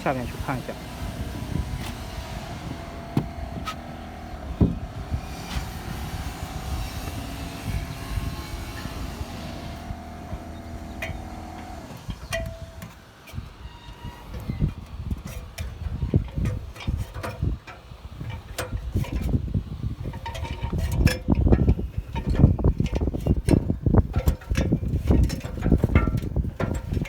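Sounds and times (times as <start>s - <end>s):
steady low rumble: 0.0s - 12.8s
thin steady hum: 0.0s - 17.4s.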